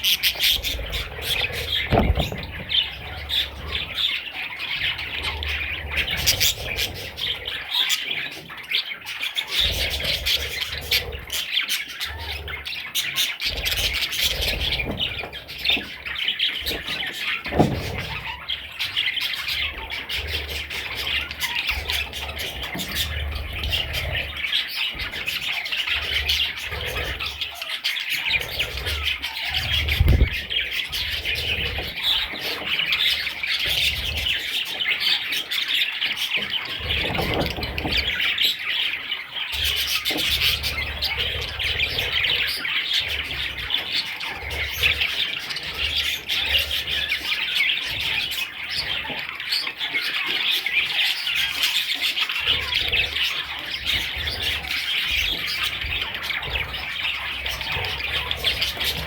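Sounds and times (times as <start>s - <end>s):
budgerigars chirping: 0.0s - 59.0s
low thumps: 1.0s - 3.3s, 29.9s - 30.6s.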